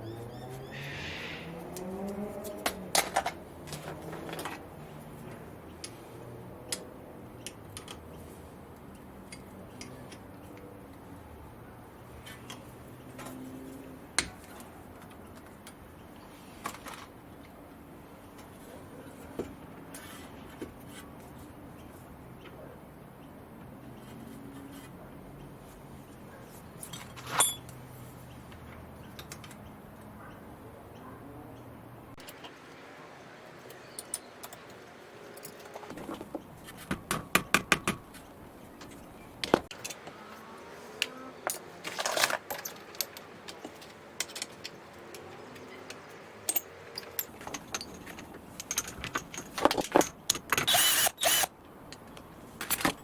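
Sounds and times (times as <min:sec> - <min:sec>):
metallic clink with ring: 0:27.3 - 0:27.8
clicks and taps on metal: 0:35.4 - 0:40.0.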